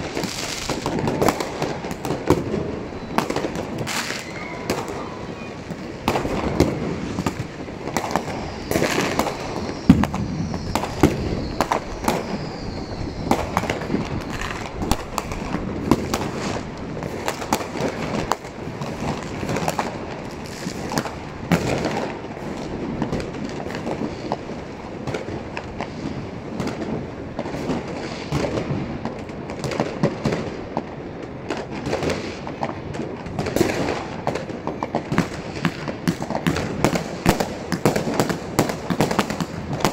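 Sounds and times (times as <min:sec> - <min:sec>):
falling firework whistle: 0:00.0 - 0:30.6
fireworks bangs and crackles: 0:00.0 - 0:39.9.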